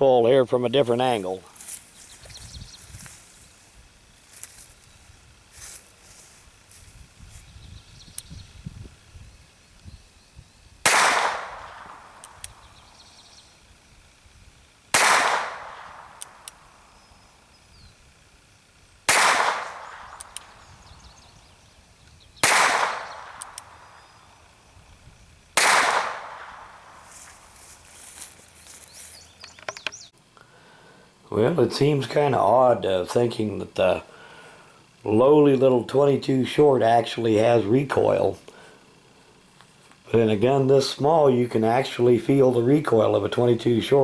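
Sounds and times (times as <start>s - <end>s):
revolver gunshots: 10.8s - 12.4s, 14.9s - 16.7s, 19.1s - 20.6s, 22.4s - 24.0s, 25.6s - 27.0s
revolver hammer cocking clicks: 10.9s - 12.6s, 15.0s - 16.6s, 19.1s - 20.6s, 22.4s - 23.8s.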